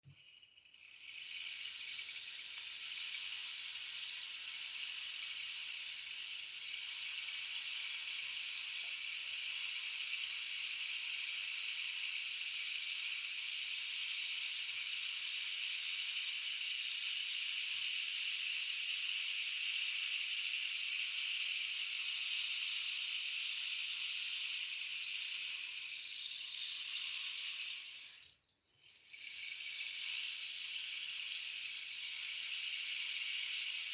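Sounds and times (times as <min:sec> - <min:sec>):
rainstick pouring: 0:00.0 - 0:06.7, 0:20.2 - 0:33.9.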